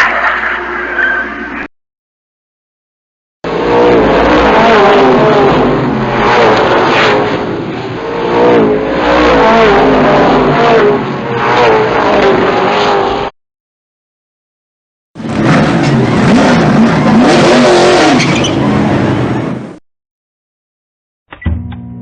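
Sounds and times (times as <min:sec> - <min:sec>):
racing car engines at high revs: 0:03.4 - 0:13.4, 0:15.2 - 0:19.8.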